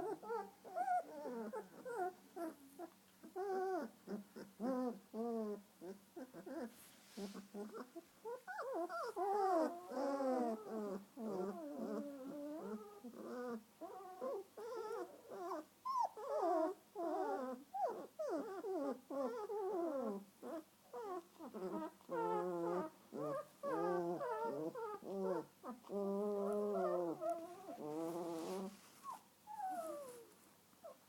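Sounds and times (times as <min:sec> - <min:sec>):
puppies whining: 0:00.0 - 0:31.0.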